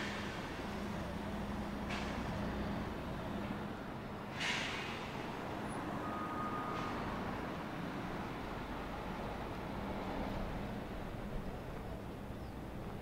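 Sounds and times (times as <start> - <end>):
vehicle engines rumbling: 0.0 - 13.0
air brakes hissing: 4.3 - 5.2.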